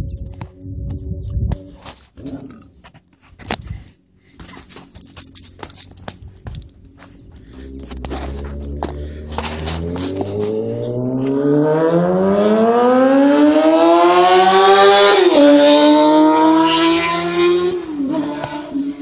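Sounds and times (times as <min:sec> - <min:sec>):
motorcycle engine revving without exhaust: 0:06.0 - 0:19.0.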